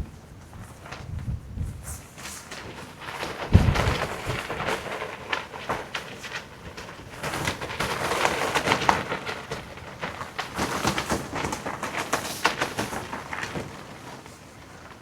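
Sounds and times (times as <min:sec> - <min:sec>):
wind noise: 0:00.0 - 0:11.8
fabric flapping and snapping: 0:00.0 - 0:15.0.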